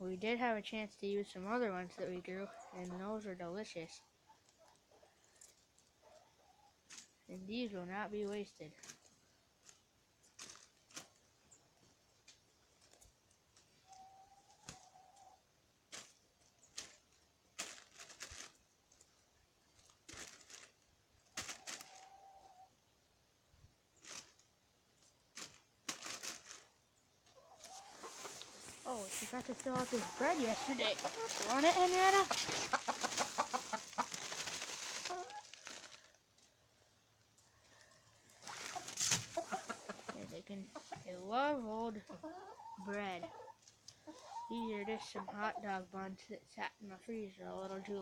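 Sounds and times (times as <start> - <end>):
hens clucking: 0.2 - 8.5, 12.6 - 16.2, 21.3 - 22.9, 27.2 - 35.9, 37.3 - 46.1
chickens pecking squash: 0.4 - 45.8
rustling and crackling: 6.8 - 14.0, 15.8 - 22.1, 23.9 - 36.6, 37.3 - 42.1.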